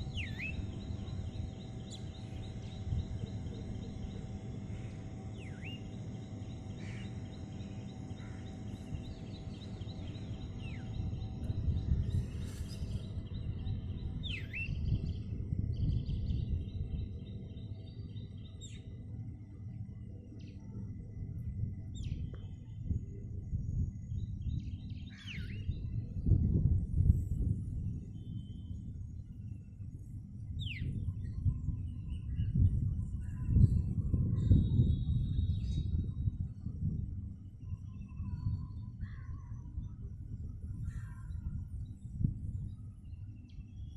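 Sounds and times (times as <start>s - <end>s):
birds chirping: 0.0s - 15.2s
low outdoor rumble: 0.0s - 43.9s.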